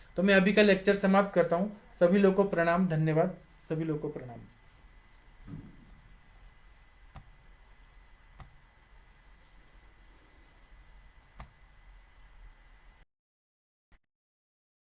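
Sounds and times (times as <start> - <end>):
soft clicks: 7.1 - 7.4, 8.4 - 8.6, 11.3 - 11.6.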